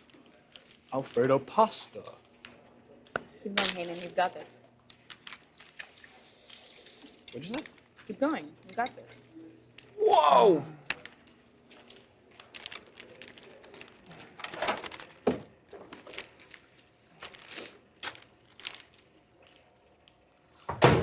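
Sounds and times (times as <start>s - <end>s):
crinkling and rustling: 10.9s - 20.7s.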